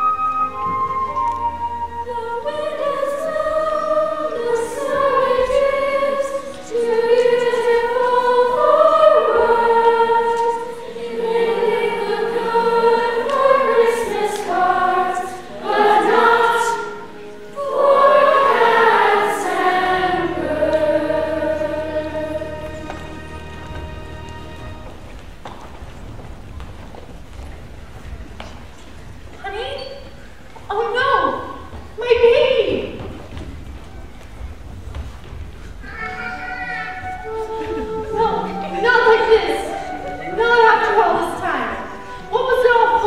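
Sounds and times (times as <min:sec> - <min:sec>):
chorus singing in harmony: 0:00.0 - 0:25.1, 0:36.9 - 0:43.0.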